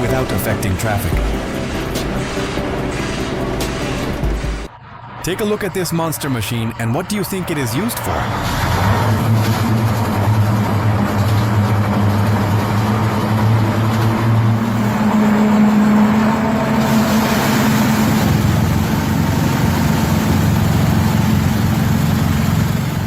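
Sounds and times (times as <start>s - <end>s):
road cleaning machine engine: 0.0s - 4.7s, 5.4s - 23.0s.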